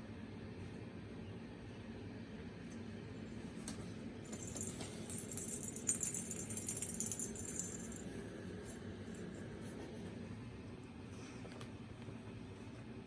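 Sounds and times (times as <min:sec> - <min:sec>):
metallic jingling rattle: 0:04.3 - 0:08.1.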